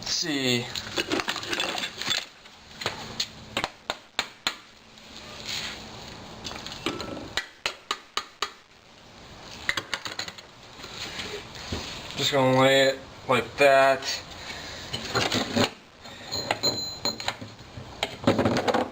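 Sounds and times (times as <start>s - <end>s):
metal tools clinking: 0.8s - 2.3s.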